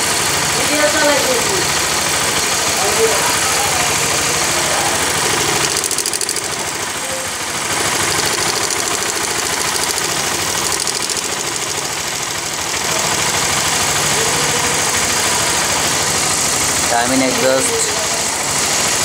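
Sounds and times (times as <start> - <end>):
motorcycle engine idling: 0.0 - 19.0
metallic ticking rattle: 5.5 - 6.8, 7.9 - 12.2.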